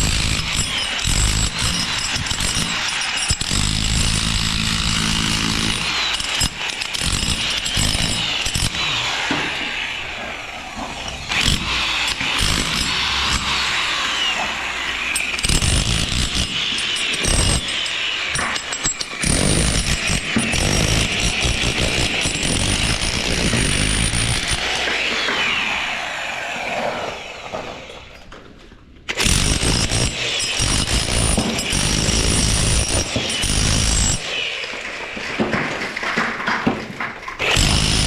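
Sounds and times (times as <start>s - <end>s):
power tools running: 0.0s - 28.3s, 29.1s - 34.8s, 37.3s - 38.0s
knocks and clatter: 34.7s - 38.0s.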